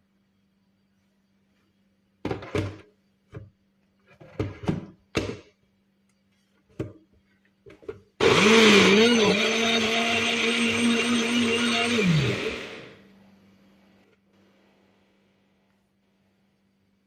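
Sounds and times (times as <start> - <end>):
blender motor running: 8.2 - 13.0.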